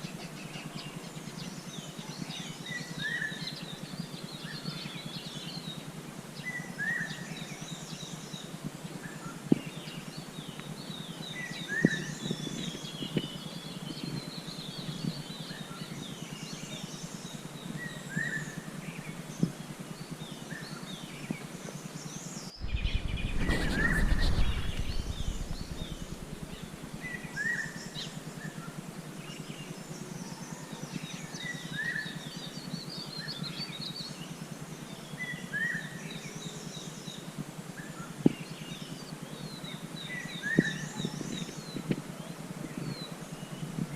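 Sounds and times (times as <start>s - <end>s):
steady background hiss: 0.0s - 43.9s
wild birds calling and singing: 0.0s - 43.9s
rush of noise: 22.5s - 27.5s.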